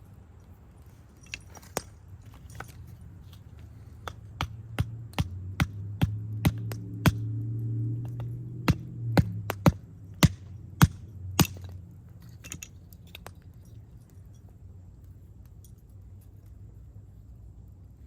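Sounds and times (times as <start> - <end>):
sharp irregular knocks: 4.0 - 7.4, 8.0 - 11.8.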